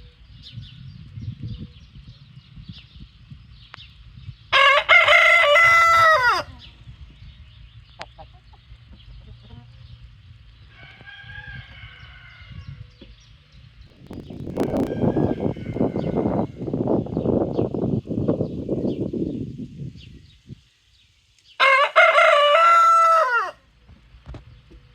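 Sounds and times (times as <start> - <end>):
rooster crowing: 4.5 - 6.5, 10.7 - 12.8, 14.5 - 16.8, 21.6 - 23.6.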